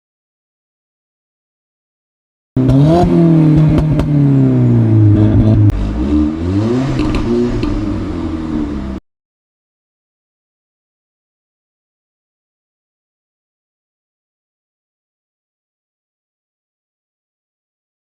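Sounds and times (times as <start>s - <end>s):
car engine revving: 2.6s - 9.0s
exhaust pops and crackles: 3.5s - 4.2s, 6.9s - 7.8s.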